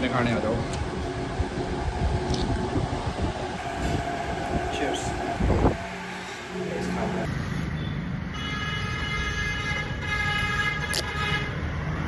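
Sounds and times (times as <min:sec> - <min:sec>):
road traffic rumbling: 0:00.0 - 0:12.0.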